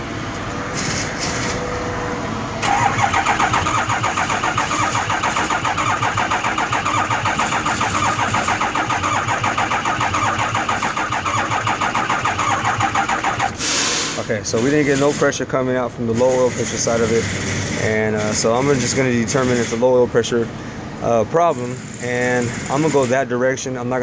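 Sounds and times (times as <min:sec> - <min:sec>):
diesel engine starter cranking: 0:02.6 - 0:15.5.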